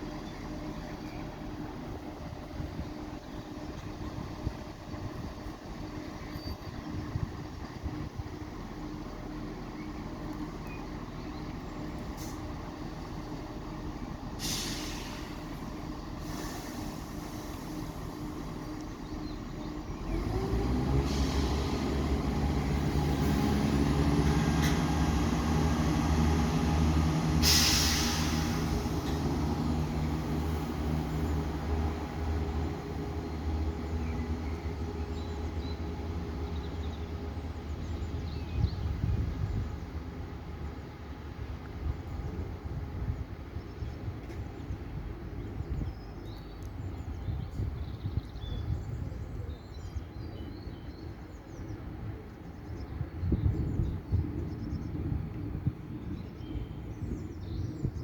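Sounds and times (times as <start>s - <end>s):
diesel train engine: 0.0s - 58.0s
air hisses: 14.4s - 15.5s, 16.2s - 18.1s, 27.3s - 29.2s.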